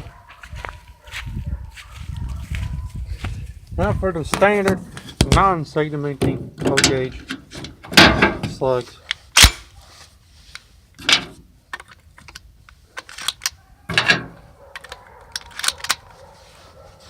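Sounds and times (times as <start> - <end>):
shotgun metallic clicks and clacks: 13.0 - 16.0.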